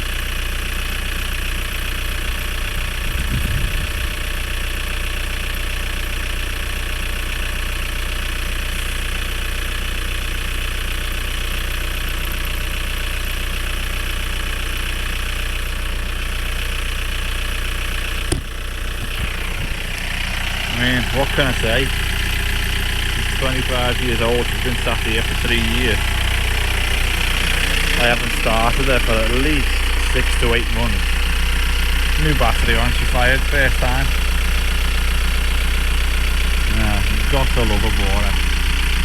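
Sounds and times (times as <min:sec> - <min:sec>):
car engine idling: 0:00.0 - 0:39.0
low thump: 0:18.3 - 0:19.7.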